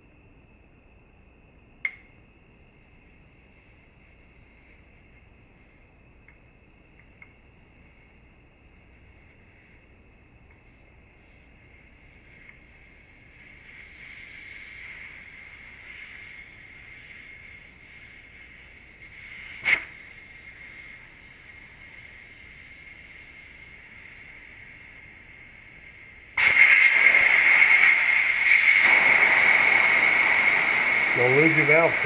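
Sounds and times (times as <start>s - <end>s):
air hissing out of a tyre: 2.2s - 32.0s
sharp click: 19.6s - 19.9s.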